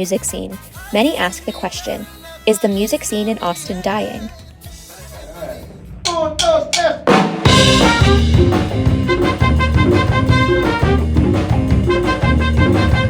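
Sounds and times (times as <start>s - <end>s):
funk band with trumpet and drums: 0.1s - 1.2s, 6.1s - 13.0s.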